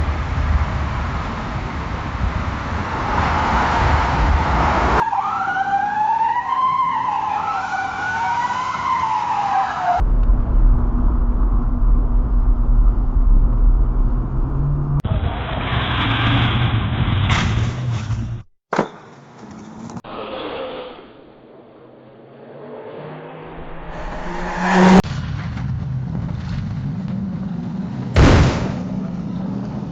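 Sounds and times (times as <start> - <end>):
car rumbling: 0.0 - 5.0, 9.8 - 18.5, 19.4 - 29.9
car engine droning: 10.0 - 18.4, 21.2 - 28.2
high-pitched squeal: 22.6 - 25.0.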